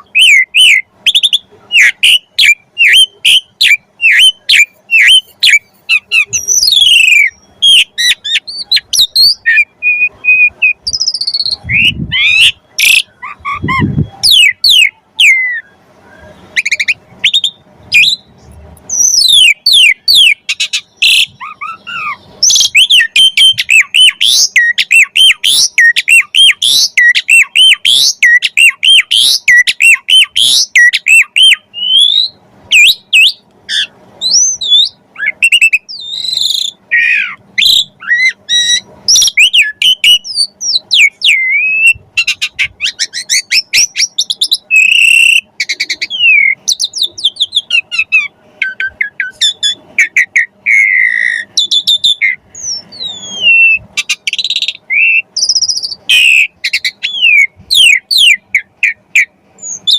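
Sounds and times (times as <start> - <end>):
starling singing loudly: 0.0 - 15.7.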